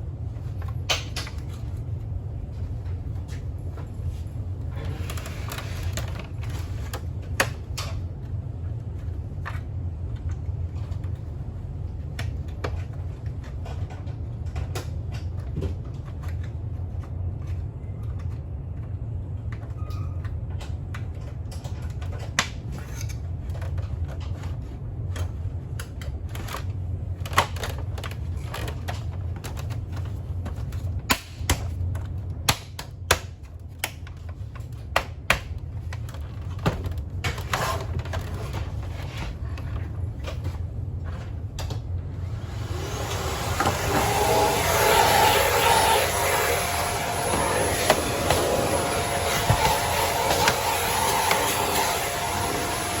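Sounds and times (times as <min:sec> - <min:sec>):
steady low hum: 0:20.4 - 0:53.0.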